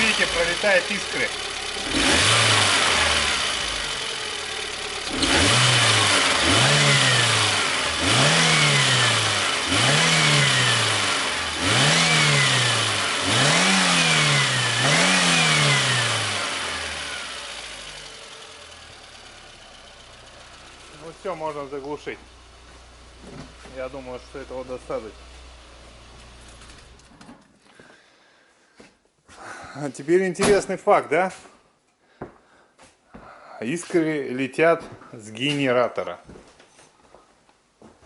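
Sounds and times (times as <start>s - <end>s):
car engine idling and revving: 0.0s - 27.2s.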